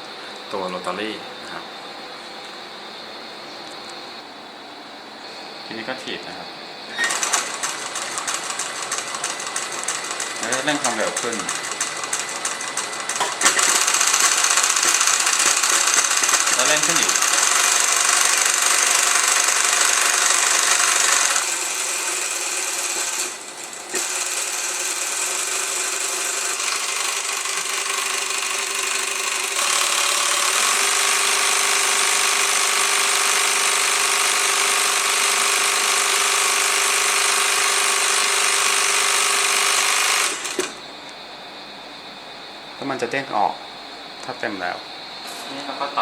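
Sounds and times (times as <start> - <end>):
sewing machine running: 6.9 - 40.8.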